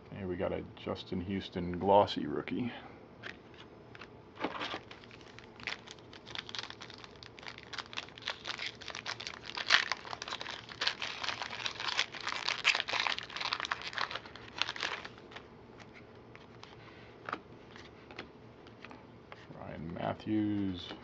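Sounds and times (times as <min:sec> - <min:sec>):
plastic wrapper crinkling: 0:04.4 - 0:16.7.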